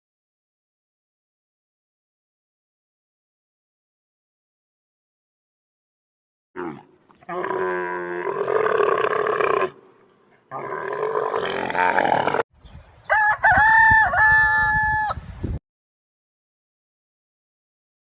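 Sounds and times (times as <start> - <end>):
roosters crowing: 13.0 - 15.2.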